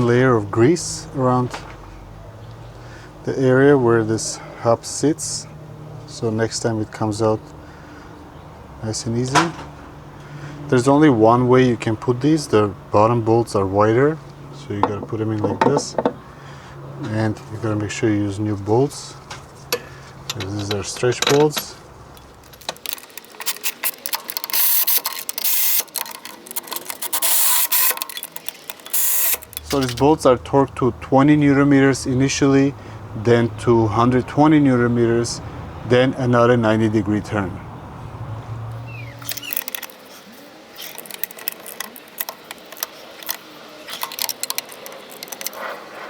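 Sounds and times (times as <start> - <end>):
rapid metallic clicks: 20.3 - 30.3, 39.1 - 40.1, 40.7 - 46.0
power ratchet running: 22.2 - 30.2, 38.9 - 40.1, 40.8 - 45.6.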